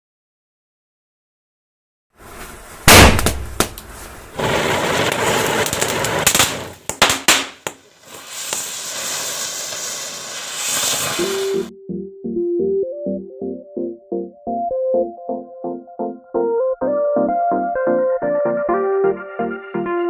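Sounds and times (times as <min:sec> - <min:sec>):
firecrackers crackling: 0:02.2 - 0:11.7
firecracker bangs: 0:02.8 - 0:11.7
long steady hiss: 0:07.6 - 0:11.7.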